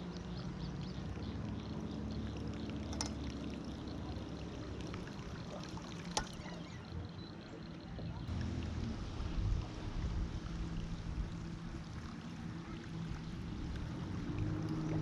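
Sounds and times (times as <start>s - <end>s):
water trickling and lapping: 0.0s - 15.0s.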